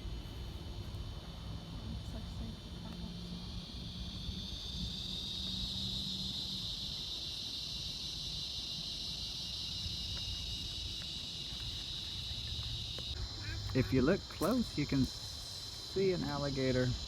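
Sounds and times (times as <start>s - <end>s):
insects calling: 0.0s - 17.0s.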